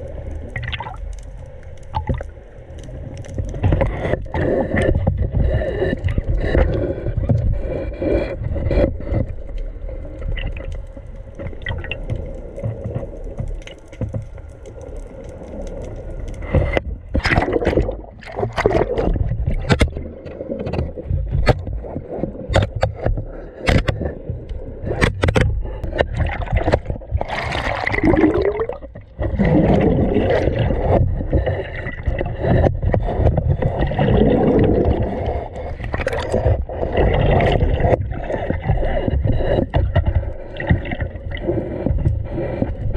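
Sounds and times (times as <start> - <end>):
sea water sloshing and gurgling: 0.0 - 42.9
knocks and scrapes: 16.3 - 28.2, 28.8 - 42.9.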